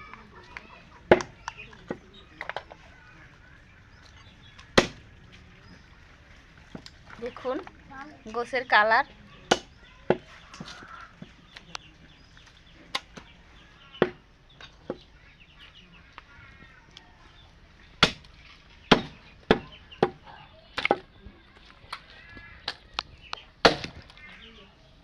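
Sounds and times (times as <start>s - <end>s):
blade chopping through bone: 4.6s - 5.1s, 9.5s - 9.8s, 18.0s - 18.3s, 18.9s - 20.2s, 23.6s - 24.0s.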